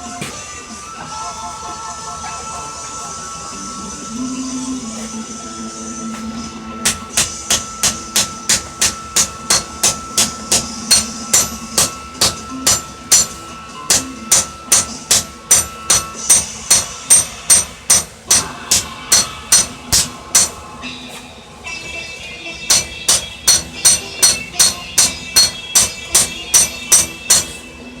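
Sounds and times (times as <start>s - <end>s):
hammer striking steel on anvil: 6.1s - 21.2s, 22.6s - 27.7s.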